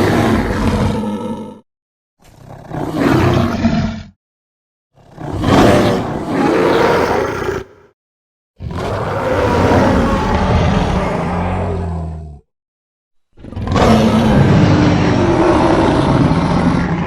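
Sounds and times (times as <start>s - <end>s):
monster roars: 0.0s - 1.6s, 2.5s - 4.2s, 5.1s - 7.9s, 8.6s - 12.4s, 13.4s - 17.0s.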